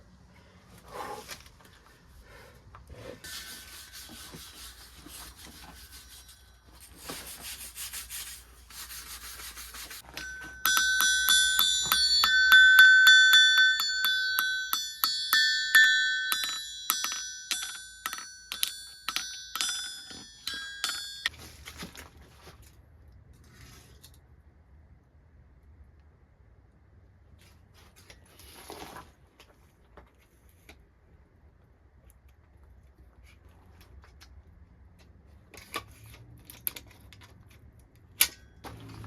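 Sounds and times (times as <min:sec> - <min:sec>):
hammer ringing on anvil: 0:10.0 - 0:21.3.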